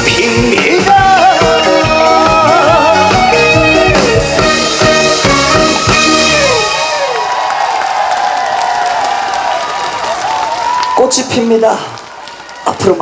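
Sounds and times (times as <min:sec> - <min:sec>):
steady drum beat: 0:00.0 - 0:06.8
trot song accompaniment: 0:00.0 - 0:06.9.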